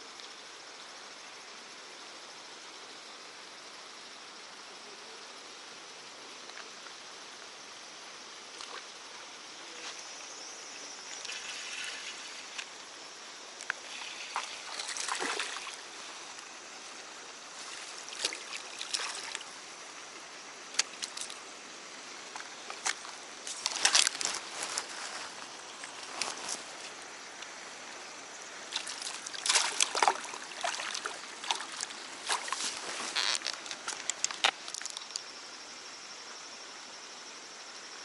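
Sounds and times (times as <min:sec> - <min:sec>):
steady hiss: 0:00.0 - 0:38.0
water sloshing and splashing: 0:13.7 - 0:19.6, 0:22.3 - 0:27.0, 0:28.7 - 0:35.0.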